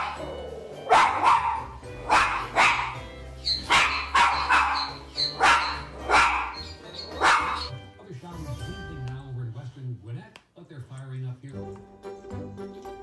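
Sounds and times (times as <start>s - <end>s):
dog barking: 0.0s - 0.3s, 0.9s - 7.7s.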